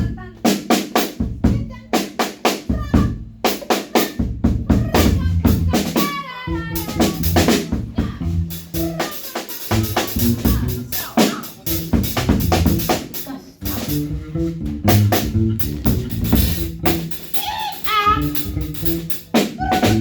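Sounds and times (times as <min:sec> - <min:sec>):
live band music: 0:00.0 - 0:20.0
held bass notes: 0:04.7 - 0:09.1, 0:09.7 - 0:20.0
drum kit hits: 0:06.8 - 0:20.0
falling run of pitched notes: 0:13.6 - 0:17.4.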